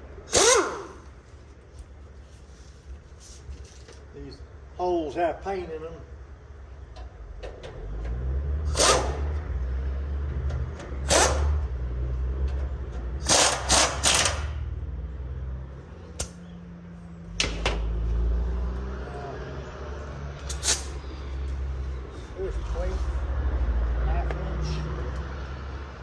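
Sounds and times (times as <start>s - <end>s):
impact wrench humming: 0.3s - 1.2s, 8.7s - 9.4s, 11.0s - 11.7s, 13.2s - 14.7s.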